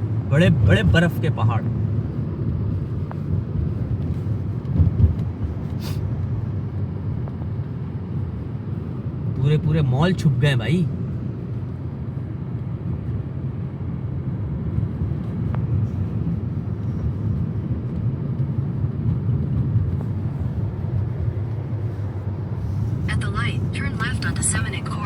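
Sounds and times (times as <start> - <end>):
car road and engine rumble: 0.0 - 25.0.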